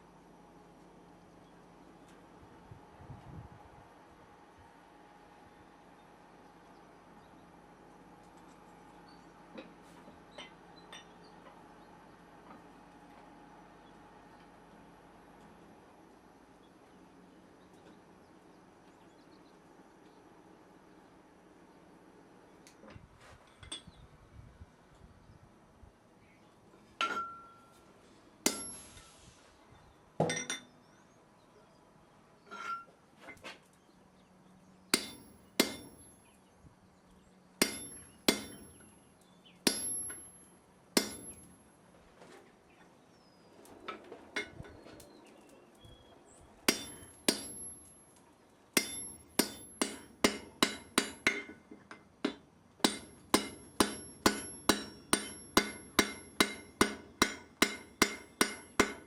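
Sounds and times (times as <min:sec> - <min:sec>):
hammer striking metal on anvil: 0:27.0 - 0:27.6, 0:28.4 - 0:29.1, 0:34.9 - 0:36.2, 0:37.6 - 0:38.9, 0:39.6 - 0:41.6, 0:46.7 - 0:48.0, 0:48.8 - 0:59.0.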